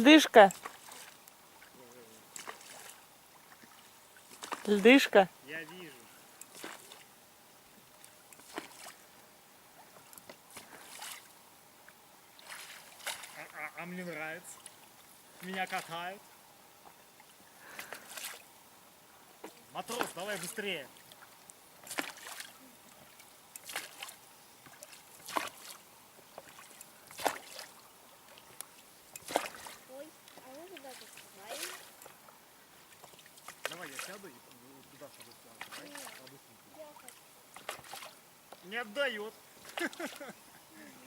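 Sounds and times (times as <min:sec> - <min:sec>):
oars splashing in water: 0:00.3 - 0:05.8, 0:06.4 - 0:07.2, 0:07.8 - 0:09.1, 0:09.7 - 0:11.4, 0:12.3 - 0:13.6, 0:17.2 - 0:18.5, 0:19.4 - 0:38.7, 0:39.6 - 0:40.3.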